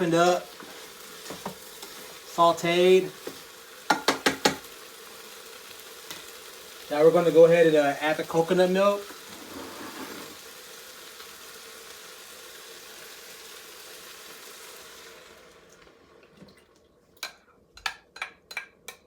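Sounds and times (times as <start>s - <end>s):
vegetables sizzling in a pot: 0.0s - 18.6s
spoon tapping and scraping a can: 17.2s - 19.0s.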